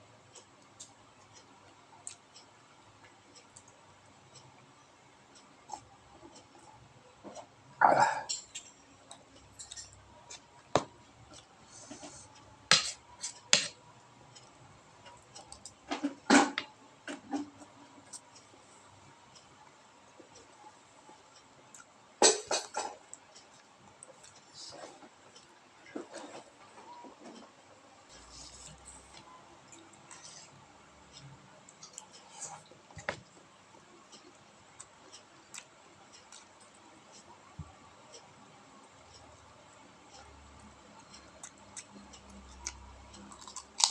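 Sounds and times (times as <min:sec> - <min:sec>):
crunchy food being eaten: 0:42.6 - 0:43.9.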